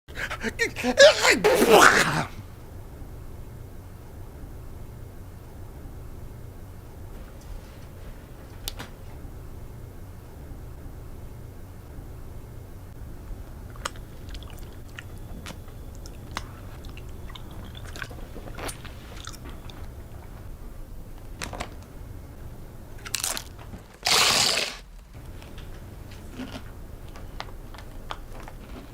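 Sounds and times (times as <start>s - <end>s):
sneeze: 0.2s - 2.4s, 24.0s - 24.8s
crunching tortilla chips: 23.0s - 28.9s.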